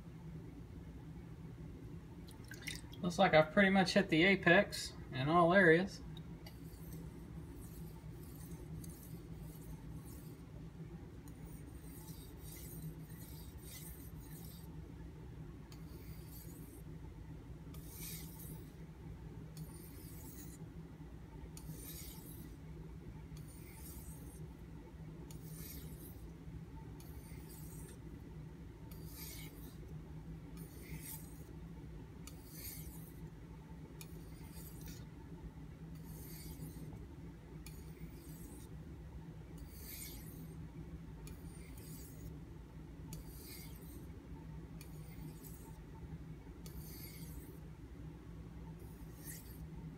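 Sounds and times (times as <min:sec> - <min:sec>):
steady low hum: 0:00.0 - 0:49.9
knife scraping on whetstone: 0:06.5 - 0:10.4, 0:11.3 - 0:14.7, 0:15.7 - 0:16.8, 0:17.7 - 0:18.8, 0:19.6 - 0:20.6, 0:21.6 - 0:22.6, 0:23.4 - 0:24.5, 0:25.3 - 0:26.3, 0:27.0 - 0:28.0, 0:28.9 - 0:29.9, 0:30.6 - 0:31.5, 0:32.2 - 0:33.2, 0:34.0 - 0:35.1, 0:36.0 - 0:37.0, 0:37.6 - 0:38.7, 0:39.6 - 0:40.5, 0:41.2 - 0:42.4, 0:43.1 - 0:44.1, 0:44.8 - 0:45.8, 0:46.6 - 0:47.6, 0:48.8 - 0:49.6.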